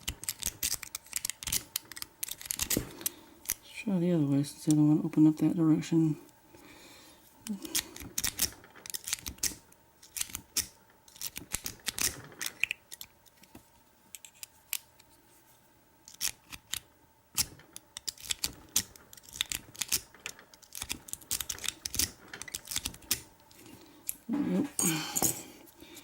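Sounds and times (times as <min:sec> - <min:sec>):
lock pick clicking and scraping: 0:00.0 - 0:03.6, 0:07.7 - 0:13.1, 0:16.1 - 0:16.8, 0:17.4 - 0:24.2.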